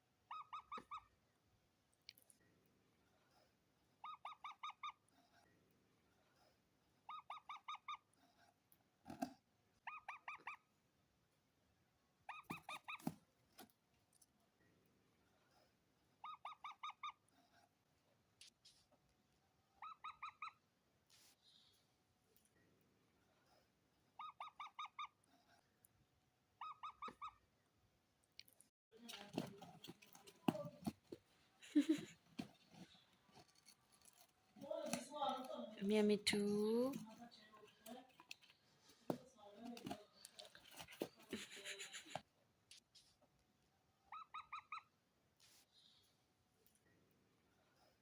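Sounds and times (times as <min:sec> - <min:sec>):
parrot squawking: 0:00.3 - 0:01.1, 0:19.8 - 0:20.6, 0:24.2 - 0:25.2, 0:26.6 - 0:27.4, 0:44.1 - 0:44.9
rustling and scratching: 0:29.0 - 0:35.8, 0:36.8 - 0:43.2.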